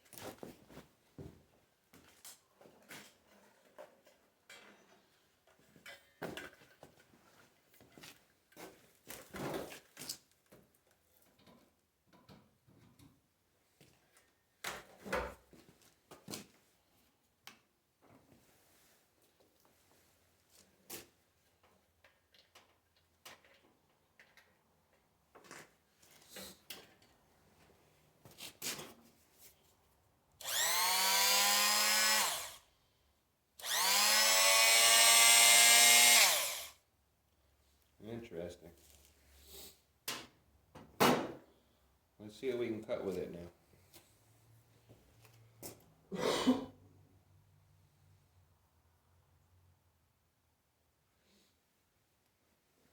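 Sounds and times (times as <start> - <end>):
oscillating multi-tool buzzing whine: 30.4 - 32.6, 33.6 - 36.8.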